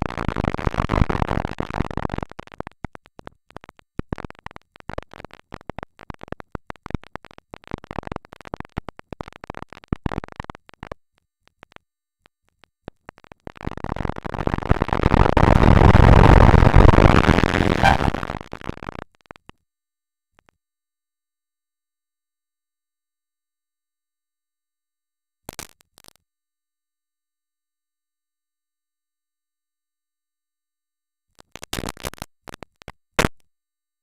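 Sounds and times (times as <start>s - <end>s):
distorted electronic noise: 15.4s - 18.5s.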